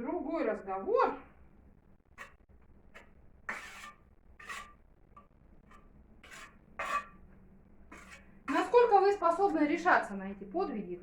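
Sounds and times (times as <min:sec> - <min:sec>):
scraping on bricks and mortar: 0:02.2 - 0:04.9, 0:05.6 - 0:07.3, 0:07.9 - 0:09.6.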